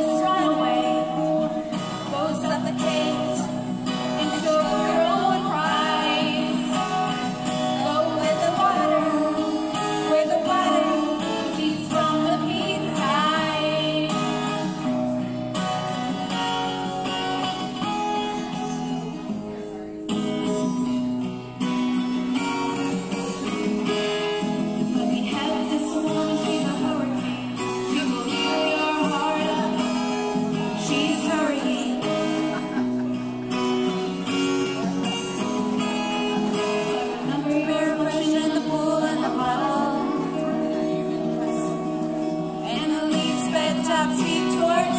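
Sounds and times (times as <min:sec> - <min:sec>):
woman singing: 0:00.0 - 0:15.0, 0:24.8 - 0:32.4, 0:36.5 - 0:44.9
strummed acoustic guitar: 0:00.0 - 0:44.9.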